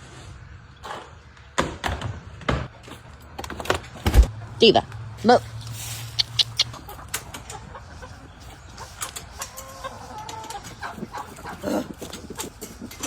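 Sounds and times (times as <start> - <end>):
chickens clucking: 3.9 - 13.0.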